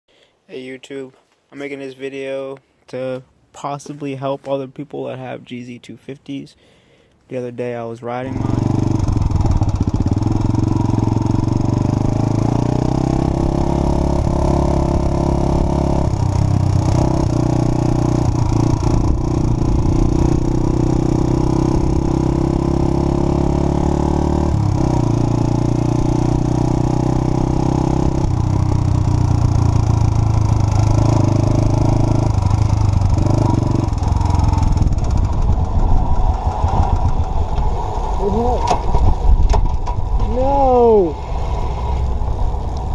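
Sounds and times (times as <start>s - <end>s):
motorcycle engine running: 8.3s - 41.2s.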